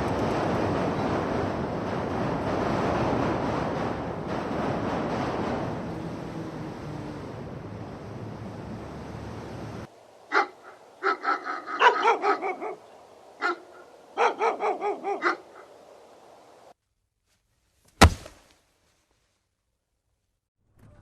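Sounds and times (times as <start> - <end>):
dog barking: 10.3 - 12.8, 13.4 - 15.7.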